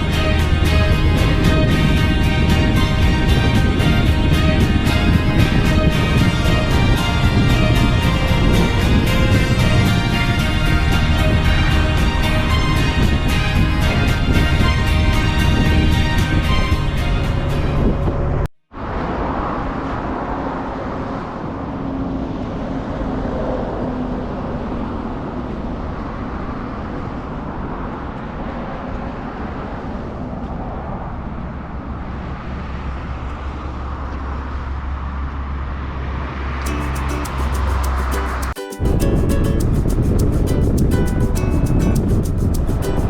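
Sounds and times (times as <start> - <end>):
background music: 0.0 - 17.9, 36.7 - 43.0
deep rumble: 0.0 - 18.9
vehicle road and wind noise: 0.0 - 43.0.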